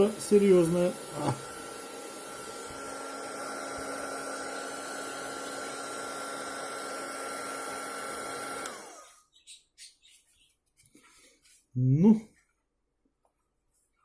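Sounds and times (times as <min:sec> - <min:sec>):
heat gun fan whirring: 0:00.0 - 0:09.2.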